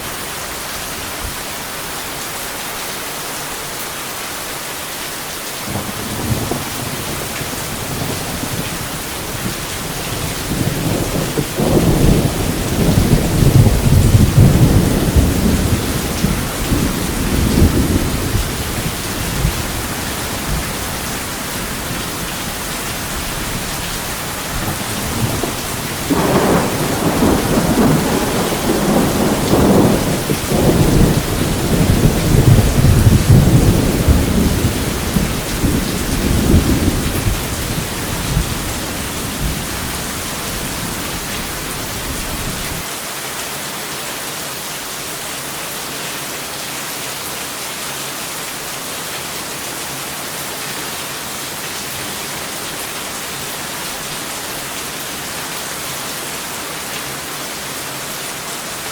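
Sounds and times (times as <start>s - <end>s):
heavy rain: 0.0s - 58.9s
rolling thunder: 5.7s - 42.8s.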